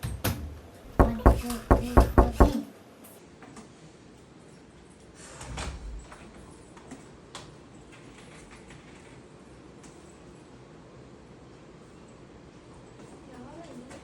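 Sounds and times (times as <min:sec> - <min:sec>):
knocking on a door: 0:00.9 - 0:02.6.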